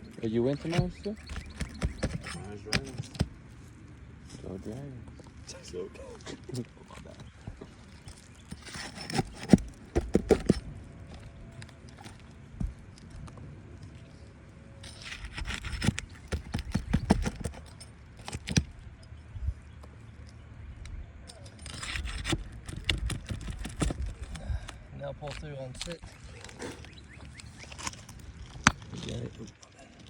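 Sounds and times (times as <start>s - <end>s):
scraping on roof shingles: 0.3s - 3.4s, 6.9s - 11.3s, 14.8s - 18.8s, 21.5s - 24.7s.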